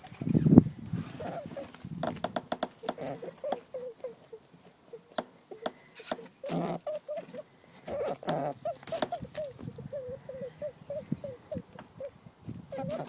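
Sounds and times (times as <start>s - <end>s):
clicks and rustles of movement: 0.0s - 3.7s, 5.1s - 9.8s
rabbit squeaking: 0.3s - 13.0s.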